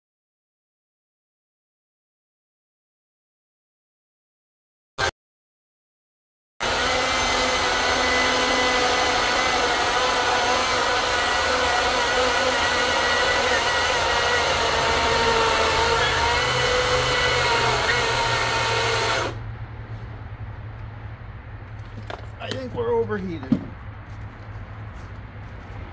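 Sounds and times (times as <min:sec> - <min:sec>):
electric chainsaw cutting log: 0:06.6 - 0:19.4.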